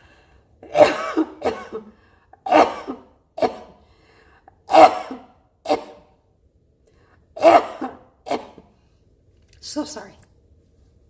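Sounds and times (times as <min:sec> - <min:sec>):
person coughing harshly: 0:00.6 - 0:03.8, 0:04.6 - 0:06.1, 0:07.4 - 0:08.7.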